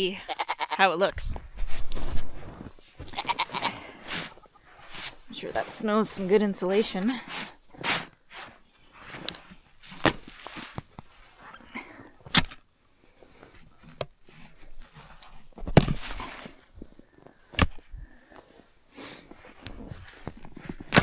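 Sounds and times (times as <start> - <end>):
crunching in snow: 1.5 - 11.5.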